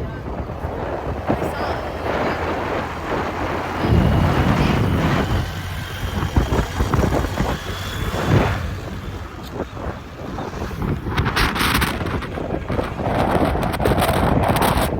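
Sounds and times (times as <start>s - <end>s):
road rumble: 0.0s - 14.9s
vehicle engine running: 0.0s - 14.9s.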